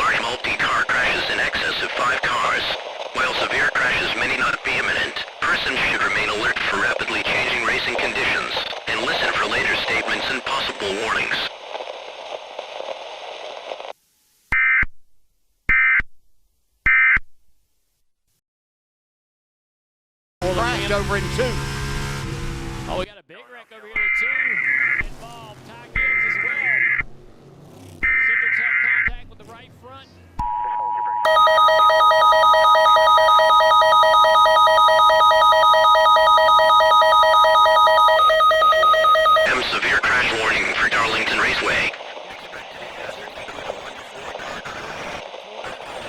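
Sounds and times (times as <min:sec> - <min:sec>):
warbling digital data tones: 0:31.3 - 0:39.8.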